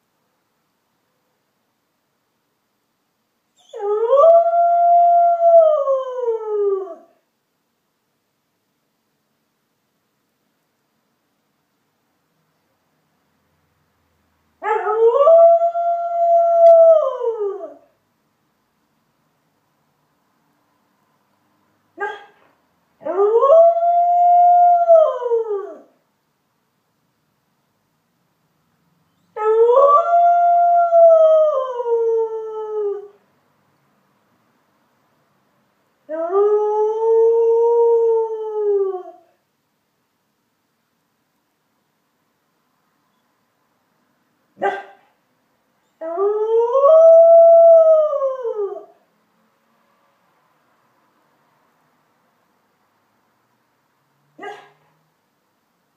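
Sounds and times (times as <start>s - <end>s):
dog yip: 22.0s - 22.4s, 44.6s - 45.1s, 54.4s - 54.9s.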